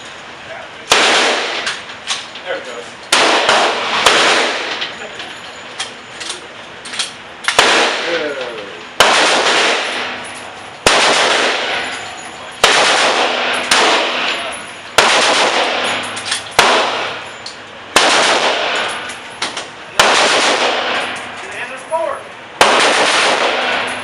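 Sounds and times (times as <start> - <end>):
gunshots with echoing decay: 0.9 - 1.8, 3.1 - 4.8, 7.5 - 8.4, 9.0 - 10.2, 10.8 - 12.0, 12.6 - 17.3, 17.9 - 19.1, 19.9 - 21.3, 22.6 - 24.0.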